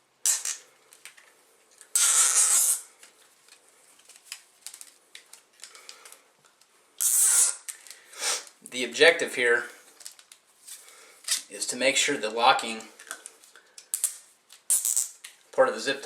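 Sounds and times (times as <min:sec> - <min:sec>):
zip ties ratcheting tight: 0:00.2 - 0:00.6, 0:01.9 - 0:02.9, 0:07.0 - 0:08.0, 0:13.9 - 0:15.3
small clicks and handling noises: 0:00.8 - 0:02.0, 0:03.0 - 0:06.8, 0:07.6 - 0:08.0, 0:09.9 - 0:11.5, 0:12.8 - 0:15.4.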